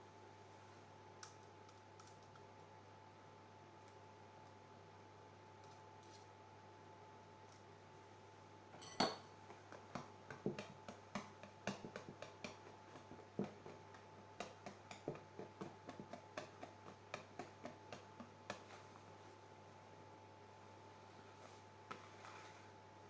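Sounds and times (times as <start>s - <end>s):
faint steady hum: 0.0s - 23.0s
utensil tapping mixing bowl: 8.8s - 19.1s.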